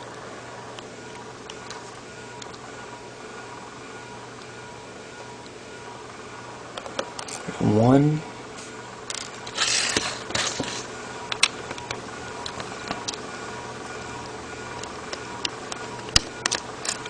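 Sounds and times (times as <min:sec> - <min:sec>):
screwdriver scratchy rustle: 0:09.1 - 0:10.9.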